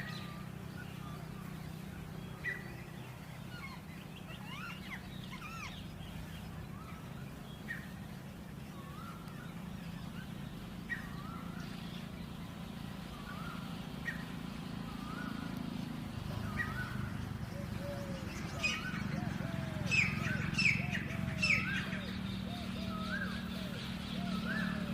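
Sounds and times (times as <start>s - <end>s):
songbirds chirping and whistling: 0.0s - 24.9s
steady low hum: 0.0s - 24.9s.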